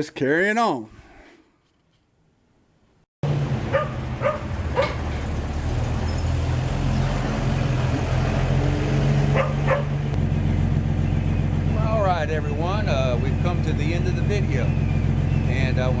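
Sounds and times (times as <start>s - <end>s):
vehicle engine running: 3.2s - 16.0s
dog barking: 3.7s - 5.1s, 9.3s - 10.0s.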